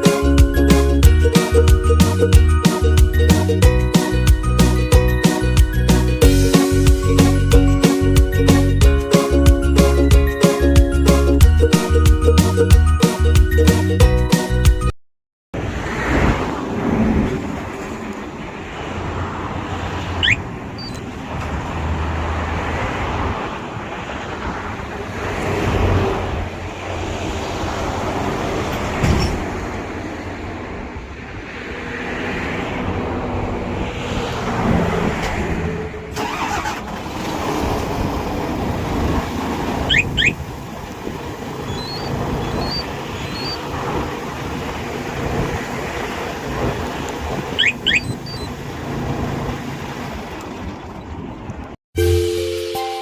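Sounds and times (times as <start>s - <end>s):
high rising chirps: 20.2s - 21.0s, 39.9s - 40.4s, 41.6s - 43.6s, 47.6s - 48.6s
diesel truck engine running: 35.1s - 51.6s.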